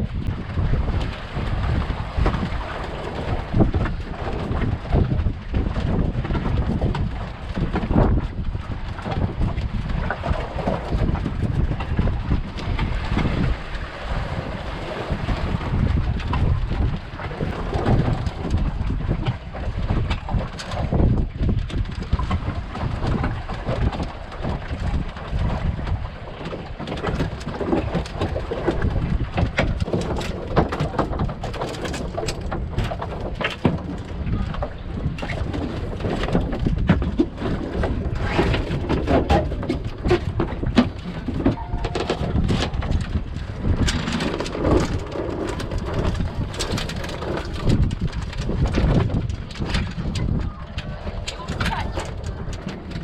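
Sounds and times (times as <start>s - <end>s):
wind buffeting microphone: 0.0s - 53.0s
knocks and clatter: 26.4s - 53.0s.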